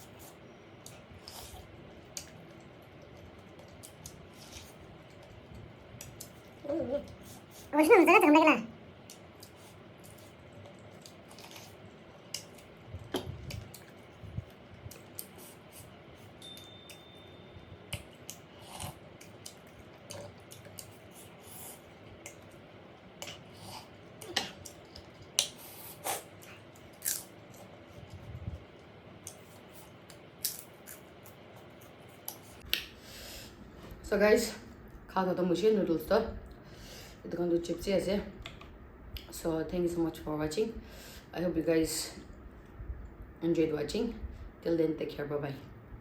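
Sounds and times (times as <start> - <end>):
person chewing noodles: 9.0 - 16.3, 18.0 - 32.7.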